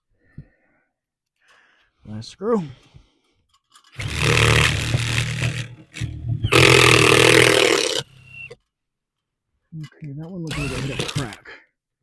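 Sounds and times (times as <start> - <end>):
power drill driving a screw: 4.0 - 8.6, 10.5 - 11.4.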